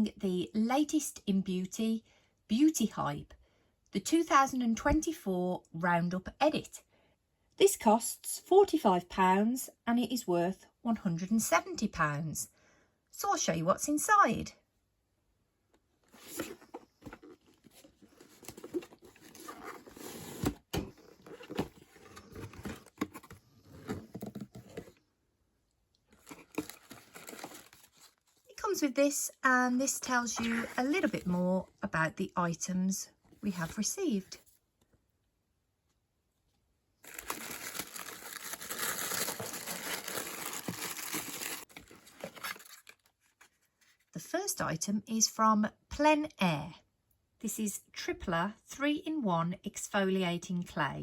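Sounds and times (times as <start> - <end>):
cardboard and paper rustling: 16.1 - 25.0, 26.1 - 28.4, 37.0 - 44.1
packaging crinkling: 26.1 - 28.3, 37.0 - 43.5.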